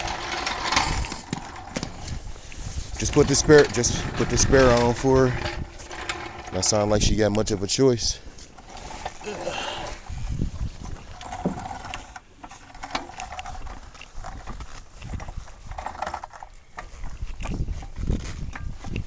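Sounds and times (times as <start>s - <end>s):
knocks and clanks of tools: 10.8s - 13.8s.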